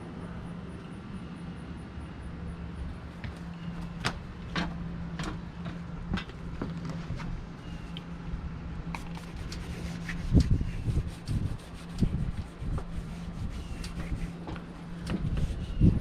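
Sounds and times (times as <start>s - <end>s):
steady low hum: 0.0s - 16.0s
clicks and rubbing: 9.0s - 10.6s.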